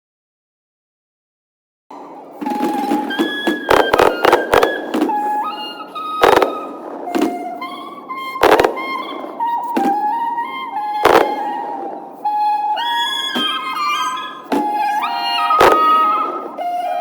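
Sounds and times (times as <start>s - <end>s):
firework bangs: 1.9s - 17.0s
background music: 6.2s - 17.0s.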